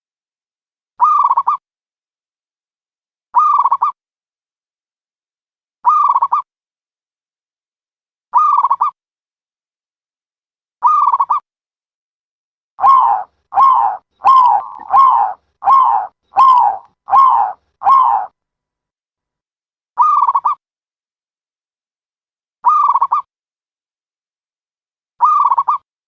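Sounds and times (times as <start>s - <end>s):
recorded dove coos: 12.8s - 18.3s.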